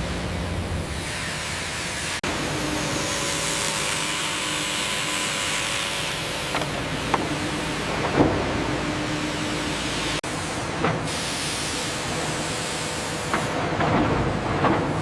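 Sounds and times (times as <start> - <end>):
sawmill machinery hissing: 0.0 - 10.4.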